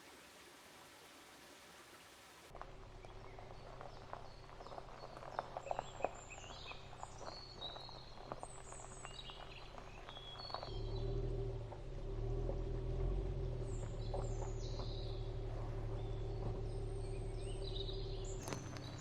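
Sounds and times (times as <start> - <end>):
songbirds chirping: 0.0 - 19.0
crackles and snaps: 2.5 - 11.0, 18.2 - 19.0.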